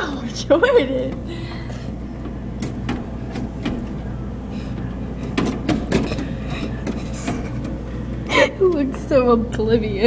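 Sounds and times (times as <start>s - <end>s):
vending machine humming: 0.0s - 10.0s.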